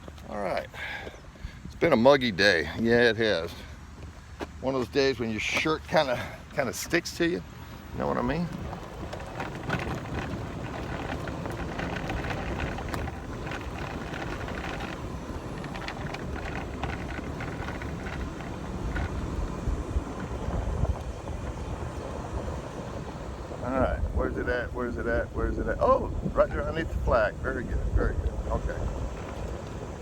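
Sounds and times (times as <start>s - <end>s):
golf cart driving: 1.9s - 30.0s
wind buffeting microphone: 5.8s - 30.0s
small rattles and clicks: 8.2s - 22.0s, 28.0s - 30.0s.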